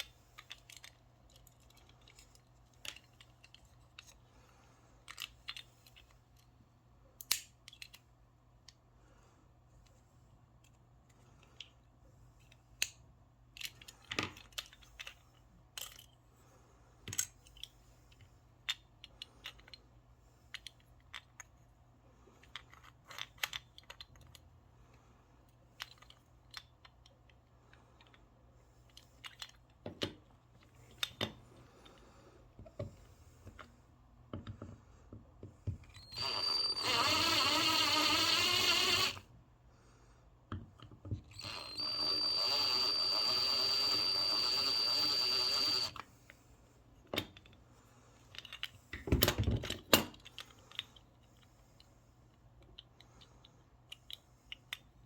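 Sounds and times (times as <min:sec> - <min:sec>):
small hard parts clicking: 0:00.0 - 0:04.2, 0:40.8 - 0:46.1
small electric power tool running: 0:36.0 - 0:39.2, 0:41.3 - 0:46.0.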